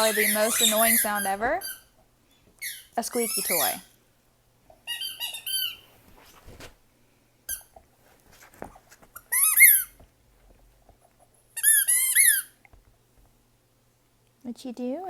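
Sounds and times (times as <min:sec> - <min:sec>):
squeaky toy squeaking: 0:00.0 - 0:01.9, 0:02.6 - 0:03.9, 0:04.8 - 0:05.8, 0:09.2 - 0:10.0, 0:11.6 - 0:12.6.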